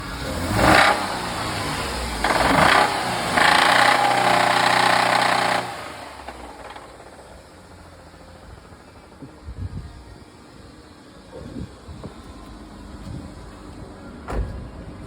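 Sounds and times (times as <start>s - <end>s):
car engine revving: 0.0s - 8.9s
engine knocking: 2.2s - 9.2s.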